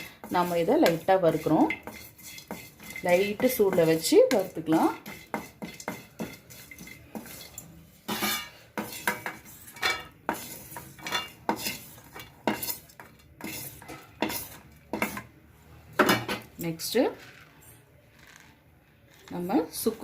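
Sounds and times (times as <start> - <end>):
spoon scraping a dry pan: 0.0 - 15.3.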